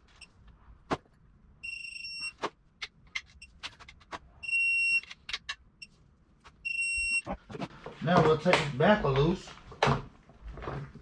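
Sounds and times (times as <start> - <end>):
wrench beeping: 1.6 - 2.4, 4.4 - 5.3.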